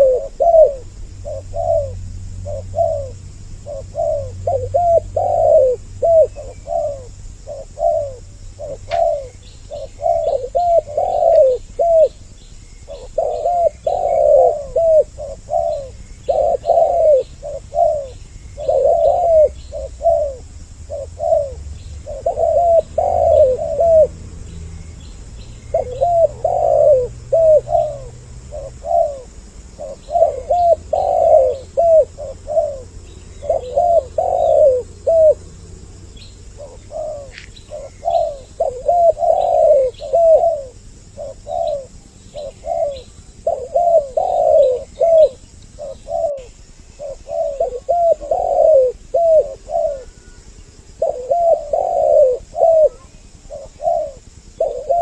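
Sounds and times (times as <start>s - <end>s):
doves cooing: 0.0s - 55.0s
faint small bird chirps: 36.1s - 55.0s.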